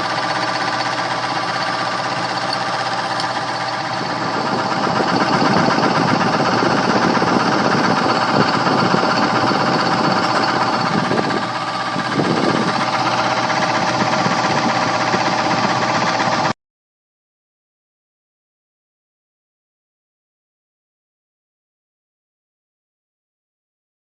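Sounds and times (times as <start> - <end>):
electric blower motor clattering: 0.0 - 16.6.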